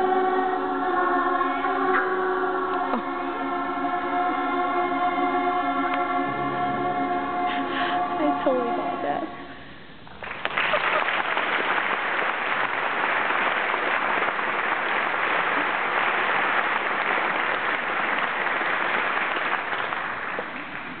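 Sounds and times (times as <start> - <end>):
audience applauding: 10.1 - 21.0.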